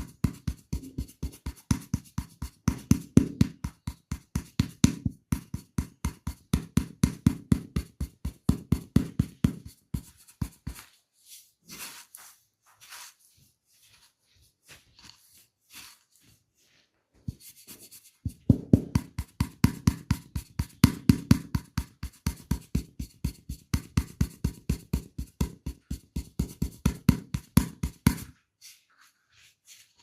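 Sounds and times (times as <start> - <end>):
hand strikes of tapping massage: 0.0 - 10.7, 18.2 - 28.4
soft rubbing sounds: 9.6 - 18.5, 28.2 - 30.0.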